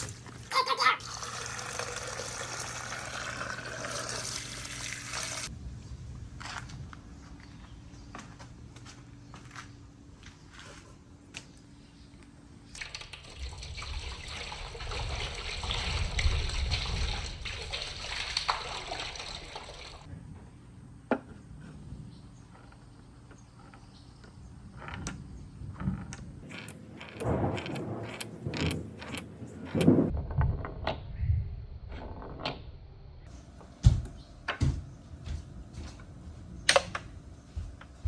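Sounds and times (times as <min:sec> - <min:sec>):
marbles rolling through wooden run: 0:26.4 - 0:30.1
wooden clacks of marbles: 0:26.5 - 0:30.1.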